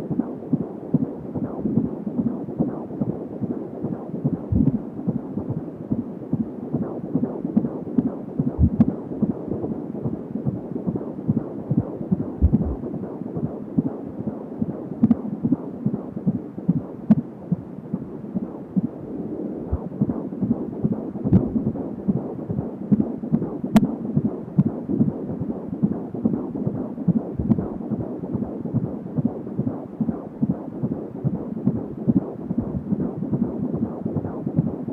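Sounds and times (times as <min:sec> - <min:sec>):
fetal heartbeat pulses: 0:00.0 - 0:34.9
noisy hiss: 0:12.4 - 0:12.9.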